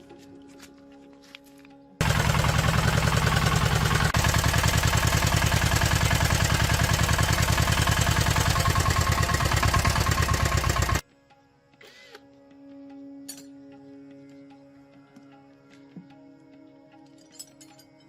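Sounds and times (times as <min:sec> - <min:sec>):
diesel engine idling: 0:02.0 - 0:11.0.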